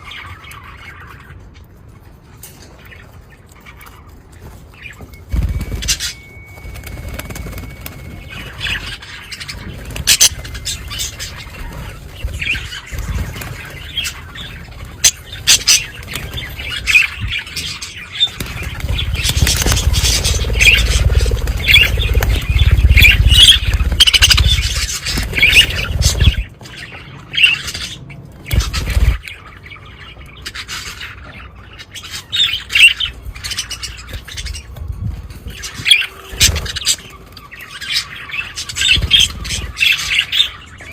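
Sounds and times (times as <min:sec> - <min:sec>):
budgerigars chattering: 0:08.2 - 0:34.6.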